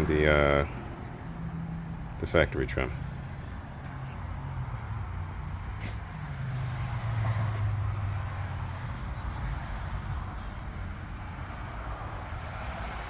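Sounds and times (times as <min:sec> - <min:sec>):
low mechanical hum: 0:00.0 - 0:07.5.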